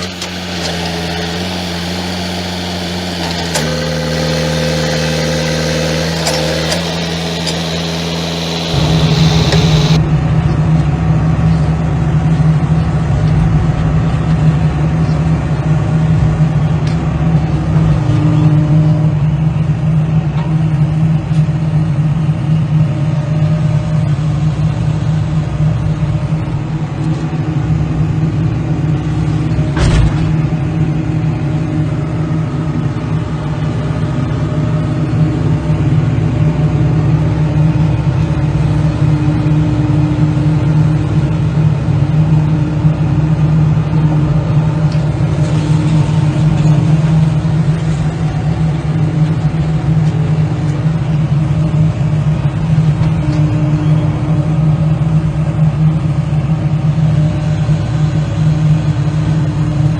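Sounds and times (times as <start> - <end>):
vehicle engine running: 0.0 - 59.9
sharp knock: 8.7 - 10.0, 29.8 - 30.6.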